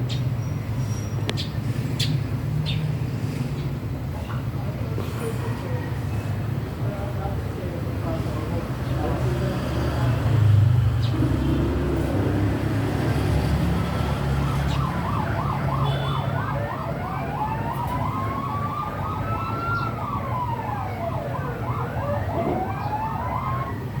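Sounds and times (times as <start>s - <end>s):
low road traffic rumble: 0.0s - 24.0s
siren wail rising and falling: 13.6s - 24.0s
siren yelp: 13.9s - 24.0s.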